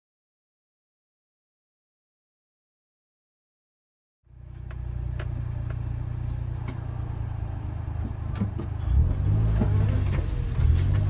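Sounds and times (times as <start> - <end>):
car engine running: 4.3 - 11.0
light knocks and rattles: 4.5 - 8.8.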